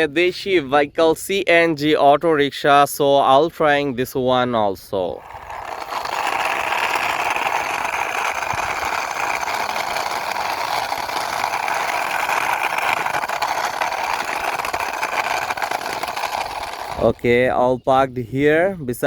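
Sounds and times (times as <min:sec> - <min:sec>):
toy wheels whirring and rolling: 0:05.0 - 0:17.6.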